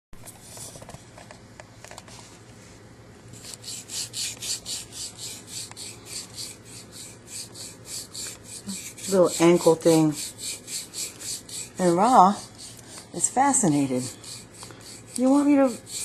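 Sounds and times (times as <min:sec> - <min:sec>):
sandpaper scraping strokes: 0:03.3 - 0:16.0.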